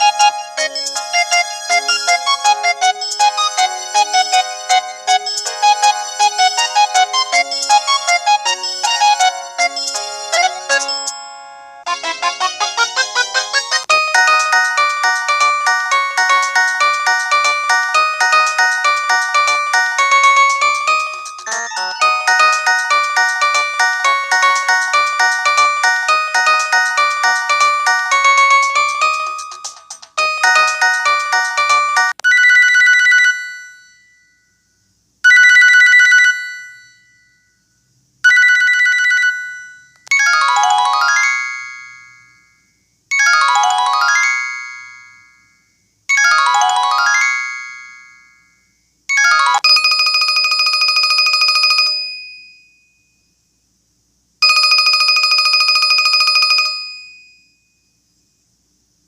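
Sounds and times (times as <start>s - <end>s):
phone ringtone melody: 0.0s - 34.3s, 35.3s - 37.2s, 38.3s - 42.4s, 43.1s - 45.5s, 46.1s - 48.5s, 49.1s - 52.4s, 54.4s - 57.3s
telephone-style ring: 5.1s - 12.0s, 13.9s - 34.2s, 35.3s - 37.3s, 38.3s - 42.3s, 49.1s - 52.7s, 54.4s - 57.4s.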